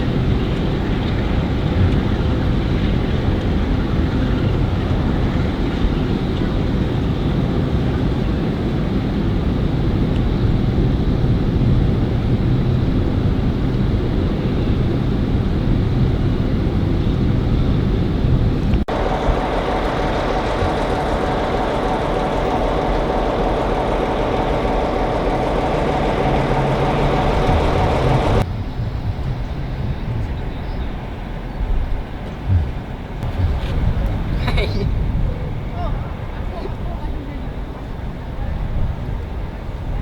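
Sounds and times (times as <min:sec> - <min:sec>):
railway train noise: 0:00.0 - 0:40.0
steady hum: 0:16.8 - 0:28.5, 0:32.5 - 0:36.4.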